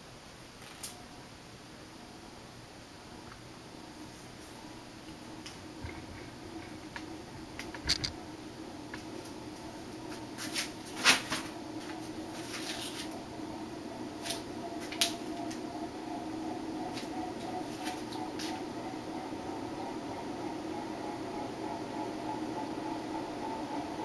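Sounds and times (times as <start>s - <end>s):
ceiling fan motor hum: 0.0s - 24.0s
fan clicks and knocks: 5.1s - 8.2s.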